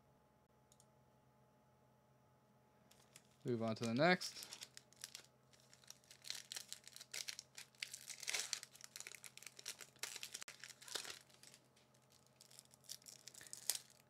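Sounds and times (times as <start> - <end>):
foil wrapper crinkling and tearing: 3.0 - 14.0.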